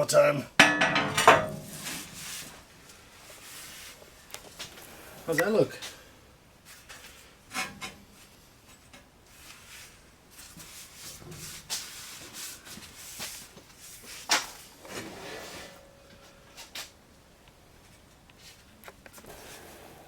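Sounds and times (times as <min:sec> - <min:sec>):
knocks and clatter: 0:00.6 - 0:01.8
rubbing or scraping: 0:01.4 - 0:02.6, 0:09.3 - 0:16.0.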